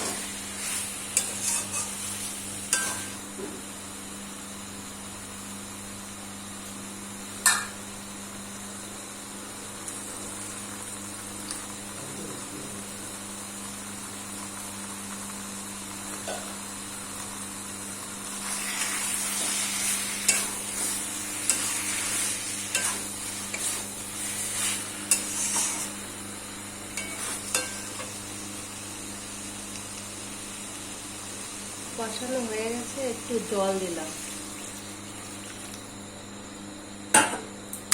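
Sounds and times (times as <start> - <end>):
spatula stirring and scraping: 0.0 - 3.0, 18.4 - 26.1, 27.0 - 28.1
chicken sizzling in a pan: 0.0 - 5.0, 6.5 - 8.0, 8.6 - 36.1.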